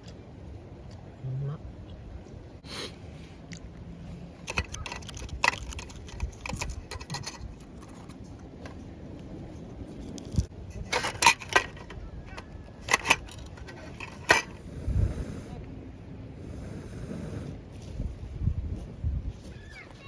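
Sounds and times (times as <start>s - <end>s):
small hard objects clinking: 4.4s - 8.4s, 10.1s - 14.6s.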